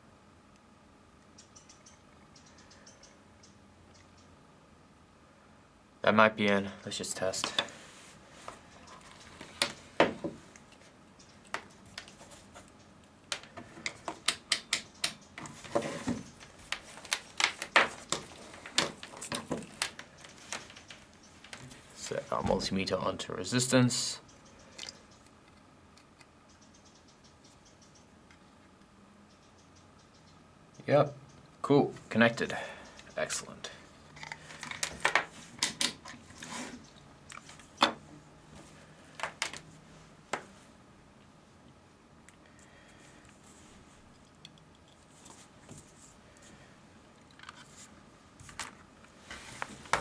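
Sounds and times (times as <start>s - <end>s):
clicks and taps of small parts: 13.3s - 15.4s.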